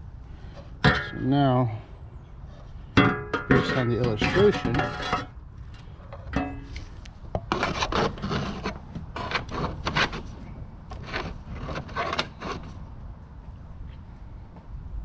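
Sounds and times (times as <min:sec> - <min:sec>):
parts scraping and knocking: 0:00.4 - 0:01.3, 0:02.5 - 0:12.8.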